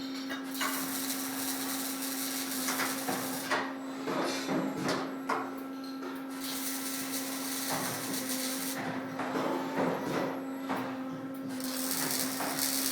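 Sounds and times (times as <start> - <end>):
arc welding hiss: 0.6 - 3.5, 6.4 - 8.8, 11.6 - 12.9.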